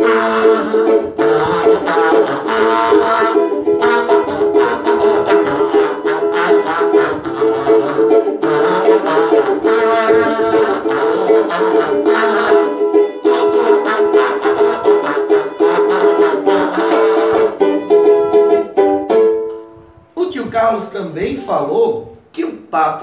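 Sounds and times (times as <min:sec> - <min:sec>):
small plucked string instrument strummed: 0:00.0 - 0:19.8.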